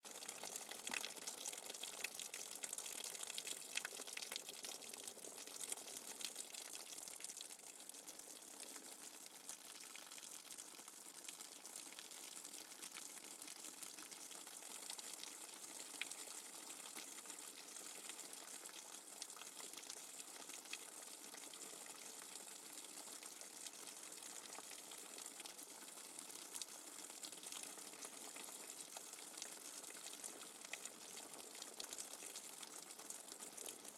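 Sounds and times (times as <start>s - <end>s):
rainwater dripping: 0.1s - 9.6s.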